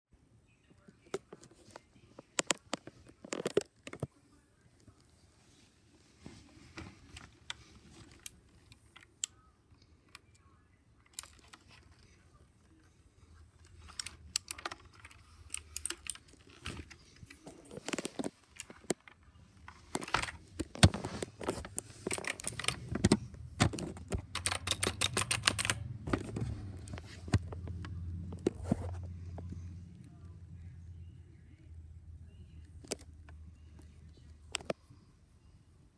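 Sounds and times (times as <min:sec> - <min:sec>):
mechanical keyboard key clicks: 0:22.1 - 0:25.8.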